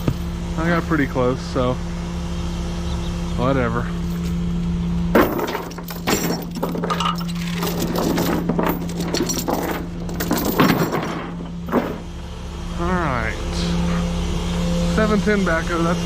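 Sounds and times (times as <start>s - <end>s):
steady low hum: 0.0s - 16.0s
sharp metal knocks: 5.1s - 12.1s
metal chain clanking: 5.1s - 12.2s.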